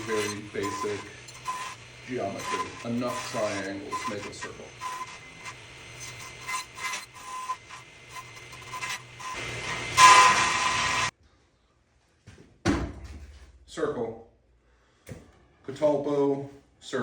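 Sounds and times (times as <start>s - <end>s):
table saw cutting wood: 0.0s - 11.1s.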